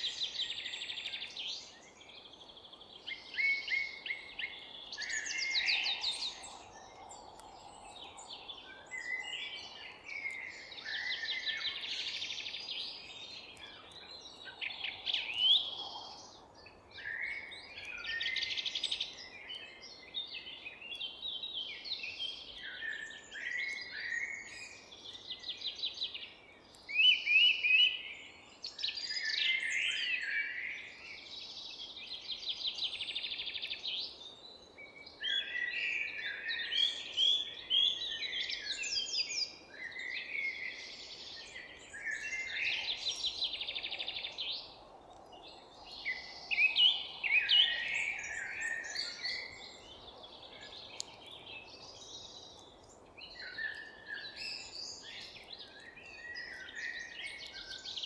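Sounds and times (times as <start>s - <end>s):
songbirds singing: 0.0s - 58.0s.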